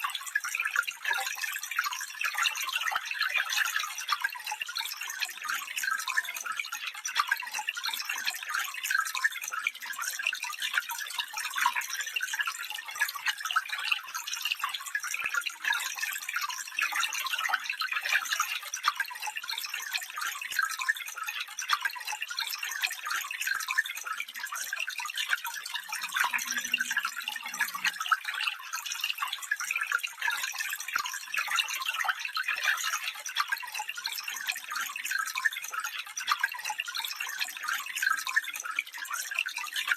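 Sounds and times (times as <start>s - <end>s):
stream babbling over stones: 25.8s - 28.7s.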